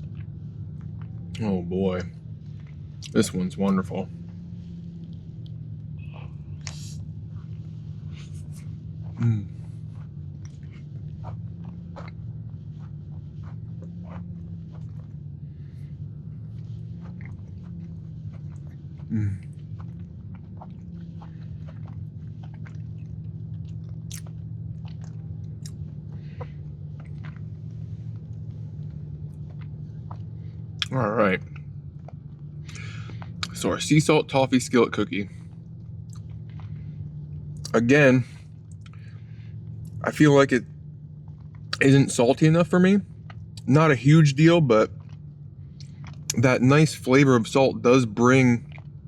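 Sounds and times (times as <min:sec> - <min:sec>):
low steady hum: 0:00.0 - 0:49.0
person chewing: 0:05.0 - 0:33.6, 0:35.7 - 0:37.7, 0:38.6 - 0:40.0, 0:45.0 - 0:46.5, 0:48.6 - 0:49.0.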